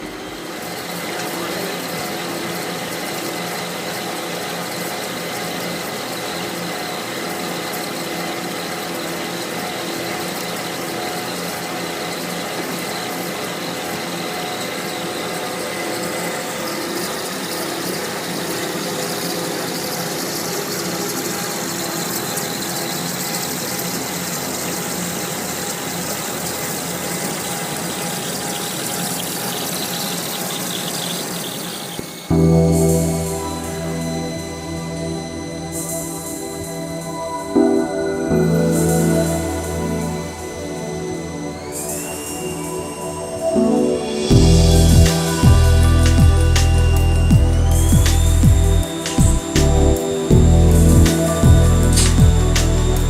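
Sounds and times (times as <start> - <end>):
machine tool drone with hiss: 0.0 - 53.0.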